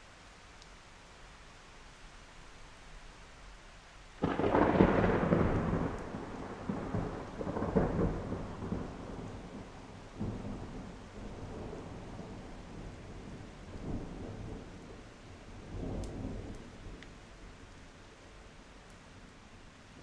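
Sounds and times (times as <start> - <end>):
steady rain: 0.0 - 20.0
rolling thunder: 4.2 - 14.8.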